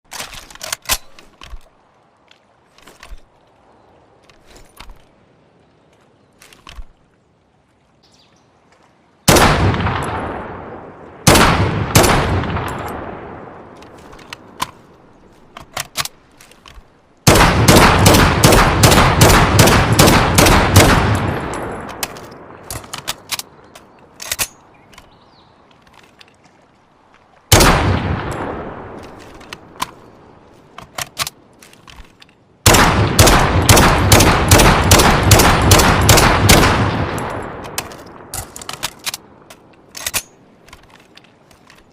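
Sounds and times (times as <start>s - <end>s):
rifle shots echoing: 9.3s - 13.7s, 17.2s - 23.3s, 27.5s - 29.1s, 32.6s - 38.8s.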